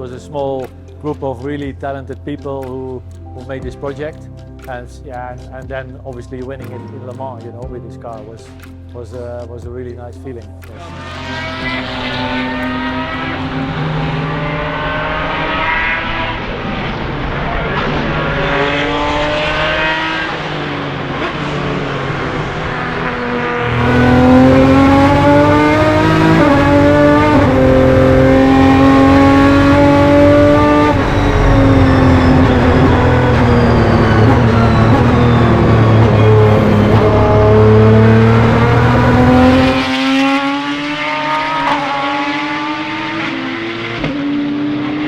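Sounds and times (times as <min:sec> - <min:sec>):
race car engine accelerating: 0:10.8 - 0:45.0.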